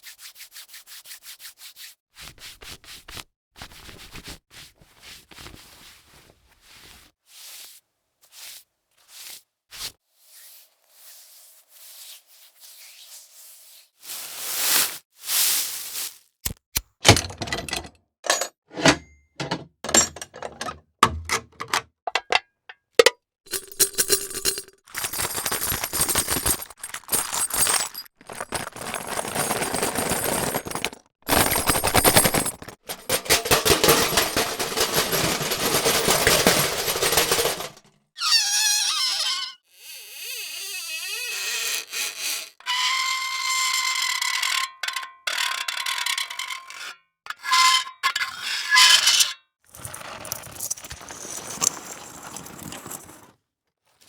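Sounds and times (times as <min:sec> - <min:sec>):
squeaky whining rubs: 0:38.2 - 0:43.1.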